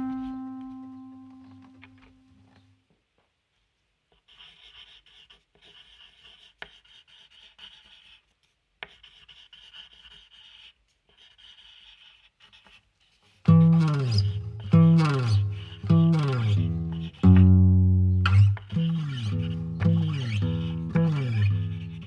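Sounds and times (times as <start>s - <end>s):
faint scratchy rubbing strokes: 4.1s - 17.4s, 18.2s - 22.0s.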